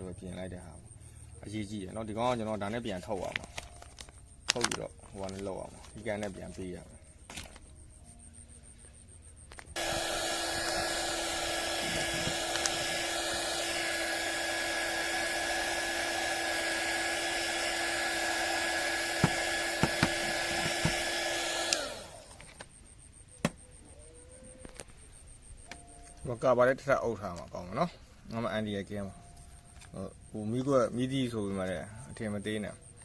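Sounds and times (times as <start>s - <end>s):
hot air gun blower: 9.8s - 22.4s.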